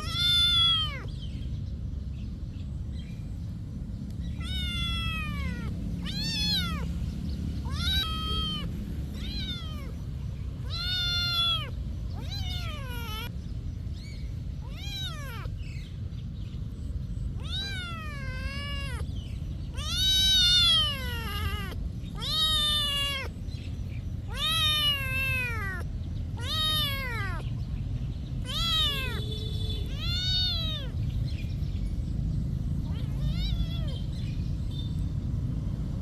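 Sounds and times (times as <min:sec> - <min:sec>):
cat meowing: 0:00.0 - 0:01.4, 0:04.3 - 0:13.3, 0:14.0 - 0:16.0, 0:17.3 - 0:31.2, 0:32.8 - 0:34.4.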